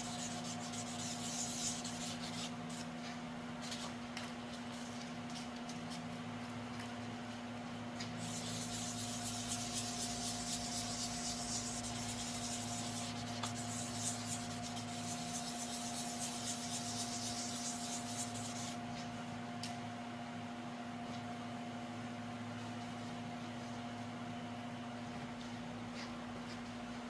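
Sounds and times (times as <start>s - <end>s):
sandpaper rubbing by hand: 0.0s - 2.9s, 8.2s - 18.8s
steady low hum: 0.0s - 27.0s.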